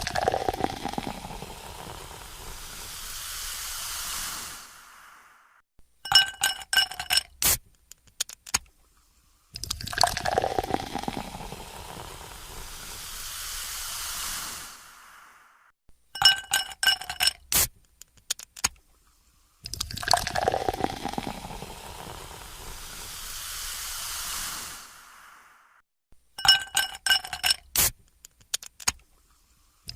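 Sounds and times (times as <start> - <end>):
soda fizzing as poured: 0.0 - 5.4, 9.6 - 15.4, 19.7 - 25.6.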